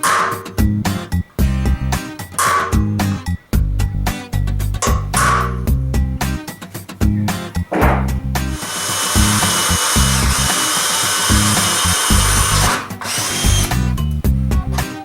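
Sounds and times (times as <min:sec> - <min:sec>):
background music with bass and guitar: 0:00.0 - 0:08.6, 0:09.2 - 0:10.5, 0:11.3 - 0:12.8, 0:13.4 - 0:15.0
power drill running: 0:08.6 - 0:13.9.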